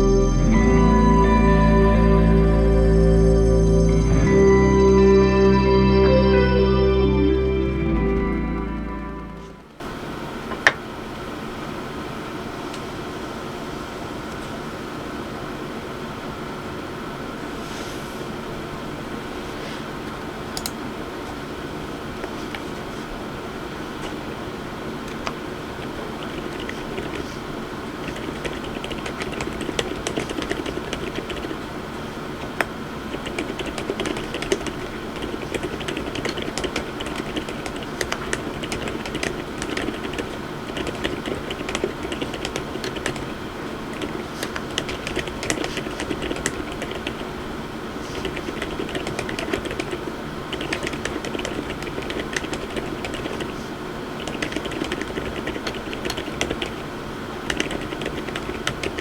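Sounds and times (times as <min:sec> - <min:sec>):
mechanical keyboard typing: 0:26.2 - 0:27.3, 0:28.0 - 0:31.6, 0:32.5 - 0:47.2, 0:48.2 - 0:53.5, 0:54.2 - 0:56.8, 0:57.4 - 0:59.0.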